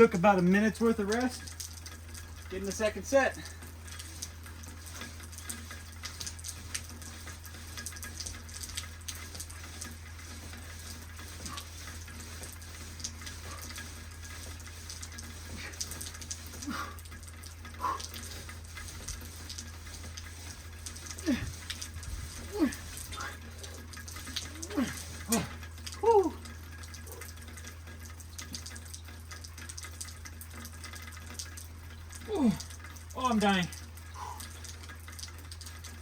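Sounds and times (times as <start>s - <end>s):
steady rain falling: 0.0s - 36.0s
voice-like sounds: 24.5s - 26.4s, 32.3s - 32.6s.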